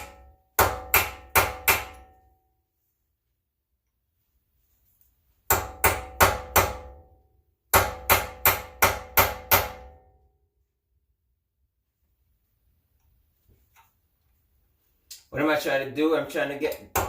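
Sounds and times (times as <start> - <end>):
hammer striking metal: 0.0 - 2.4, 5.5 - 7.1, 7.7 - 10.1.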